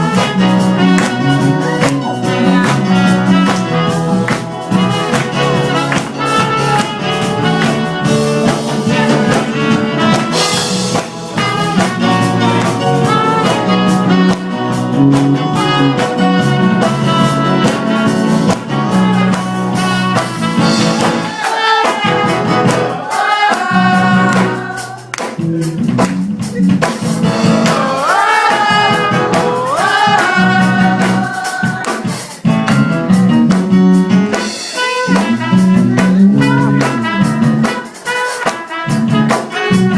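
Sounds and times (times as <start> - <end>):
low bass line: 0.0 - 10.0
drum kit: 0.0 - 39.9
jazz ensemble with horns: 0.0 - 39.9.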